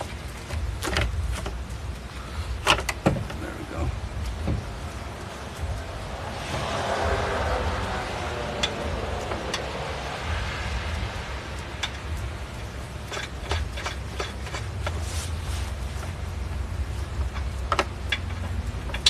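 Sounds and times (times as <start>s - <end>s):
steady low rumble: 0.0s - 19.0s
metal clicks and clinks: 11.5s - 15.0s, 17.1s - 19.0s.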